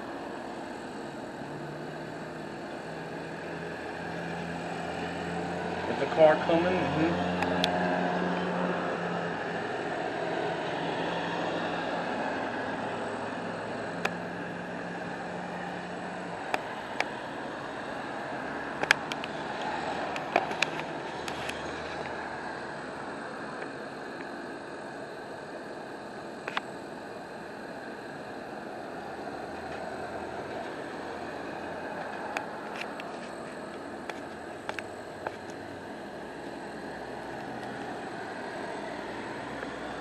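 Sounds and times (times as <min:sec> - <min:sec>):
car passing by: 0:03.2 - 0:23.1.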